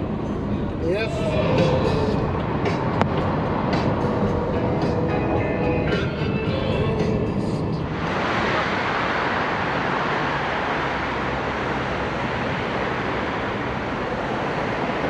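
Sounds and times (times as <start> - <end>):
steady rushing noise: 0.0 - 15.0
background music: 0.9 - 8.0.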